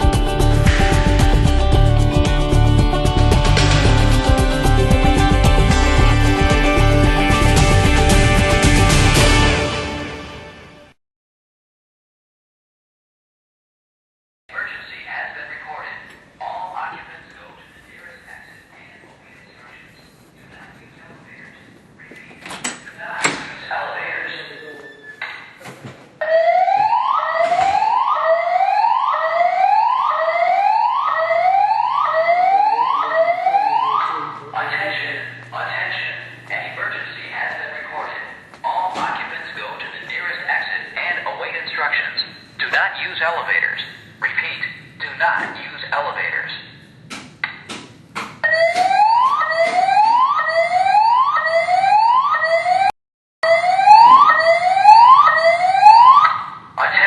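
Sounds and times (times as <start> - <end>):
spoken alarm messages: 14.5 - 25.5, 26.2 - 46.8, 48.4 - 57.0
fire alarm whoop tone: 26.2 - 34.4, 48.4 - 56.6.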